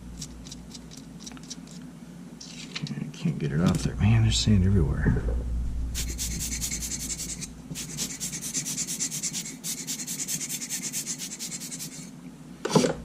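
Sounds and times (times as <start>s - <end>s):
quick scrubbing strokes: 6.0s - 12.1s.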